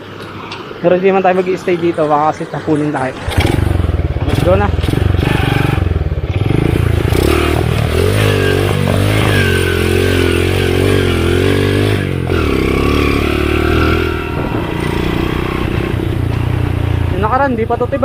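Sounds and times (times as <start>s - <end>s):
motorcycle engine revving: 3.2s - 18.0s.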